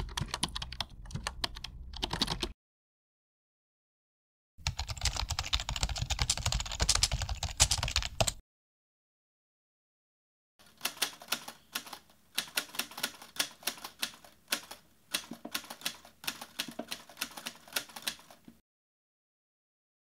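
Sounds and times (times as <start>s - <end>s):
keyboard typing clicks: 0.0s - 2.6s, 4.6s - 8.4s.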